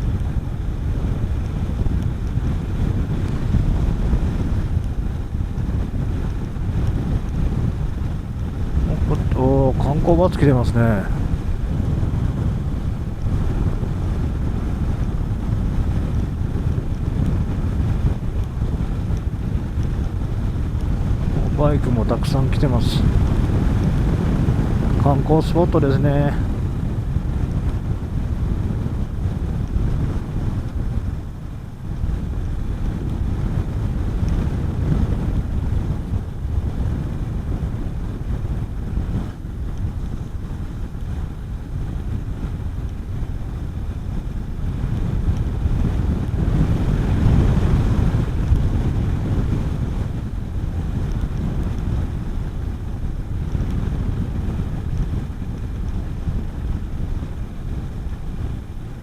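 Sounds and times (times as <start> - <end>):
wind rushing over microphone: 0.0 - 59.0.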